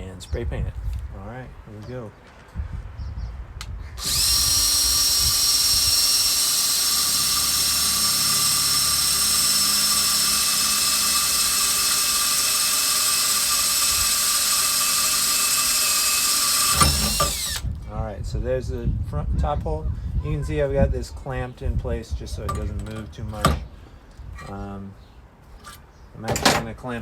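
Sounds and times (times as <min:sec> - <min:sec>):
electric drill whining: 0:04.0 - 0:17.7.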